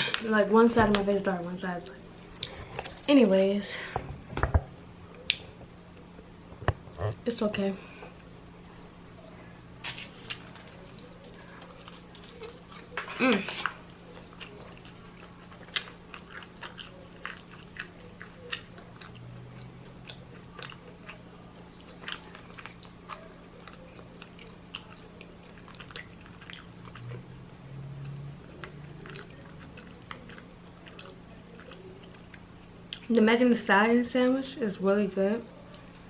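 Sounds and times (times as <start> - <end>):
person chewing: 9.8 - 33.1.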